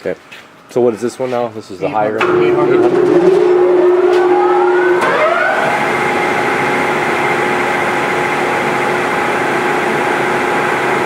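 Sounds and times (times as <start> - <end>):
lathe gear whine: 2.2 - 11.0.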